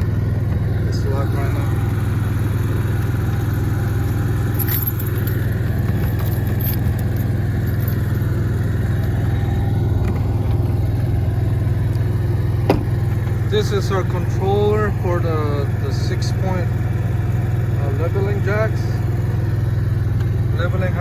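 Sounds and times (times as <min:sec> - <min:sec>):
generator humming: 0:00.0 - 0:21.0
keys jingling: 0:02.9 - 0:09.2.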